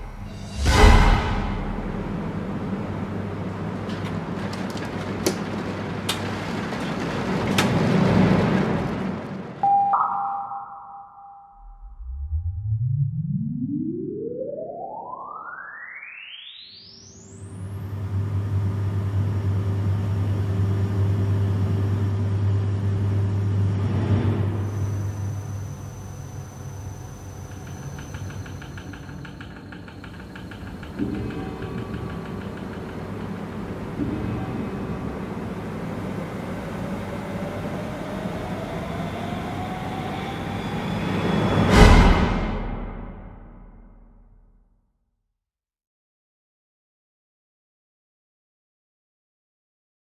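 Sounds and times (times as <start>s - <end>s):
even rushing noise: 0.0s - 3.7s
low rumble: 0.0s - 3.8s, 11.6s - 14.4s
low machinery hum: 0.0s - 9.6s, 17.5s - 43.5s.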